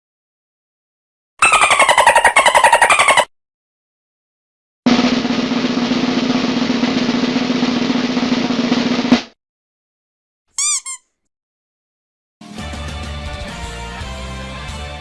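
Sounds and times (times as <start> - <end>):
snare drum roll: 4.9 - 9.4.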